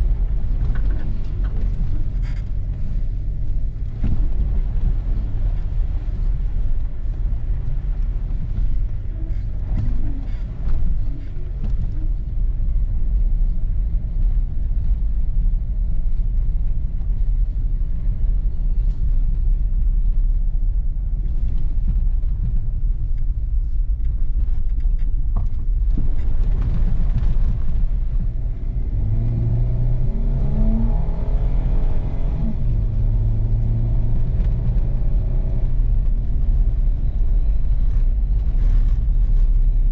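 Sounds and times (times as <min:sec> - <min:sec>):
off-road vehicle engine rumble: 0:00.0 - 0:39.9
engine revving: 0:28.4 - 0:36.0.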